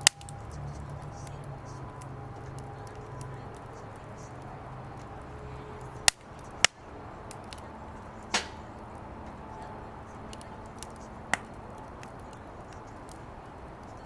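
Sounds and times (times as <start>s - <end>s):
firewood crackling: 0.0s - 14.0s
loud sharp pops: 8.3s - 8.7s.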